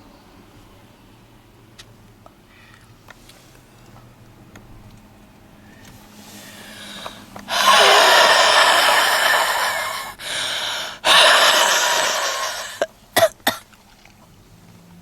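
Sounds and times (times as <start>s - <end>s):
woman breathing heavily: 6.3s - 12.9s.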